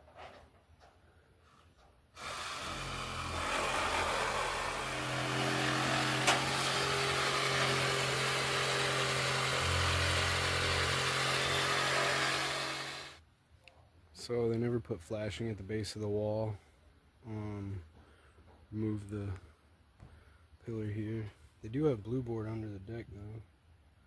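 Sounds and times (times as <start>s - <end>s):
power tool motor whirring: 2.2s - 13.2s.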